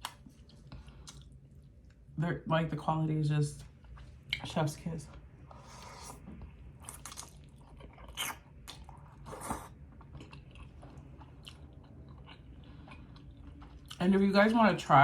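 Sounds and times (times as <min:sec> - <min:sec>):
person chewing food: 0:00.0 - 0:02.0, 0:05.1 - 0:14.0.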